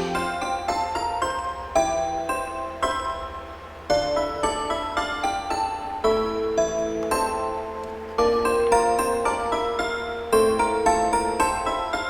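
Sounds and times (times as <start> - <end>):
bright keyboard notes: 0.0 - 1.0.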